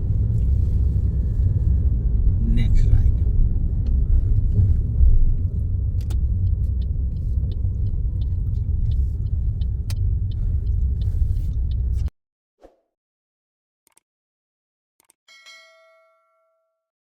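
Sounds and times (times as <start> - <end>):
car road and engine rumble: 0.0 - 12.1
faint irregular ticks: 6.0 - 12.1.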